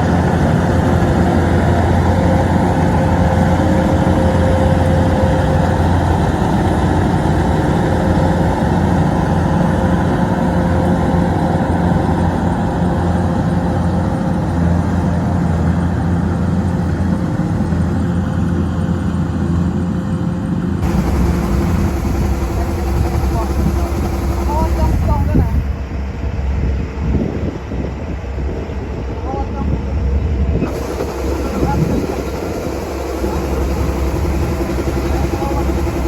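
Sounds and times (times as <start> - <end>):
heavy engine running steadily: 0.0 - 36.0.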